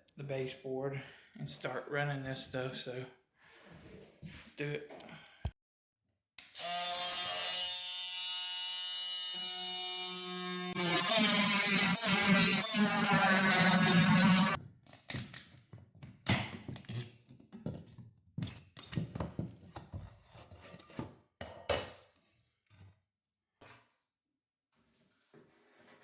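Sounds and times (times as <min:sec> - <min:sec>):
power tool buzzing: 0:06.4 - 0:14.6.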